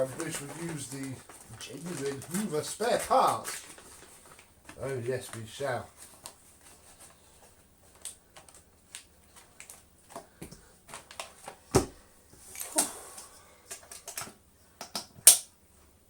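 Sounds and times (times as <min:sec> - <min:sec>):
rustling: 0:00.0 - 0:11.7.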